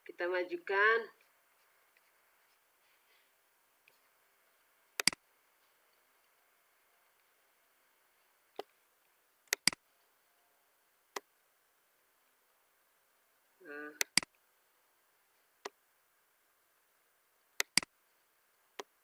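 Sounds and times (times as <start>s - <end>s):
faint room hiss: 0.0s - 19.0s
computer mouse clicking: 5.0s - 5.2s, 9.5s - 9.8s, 14.0s - 14.3s, 17.6s - 17.9s.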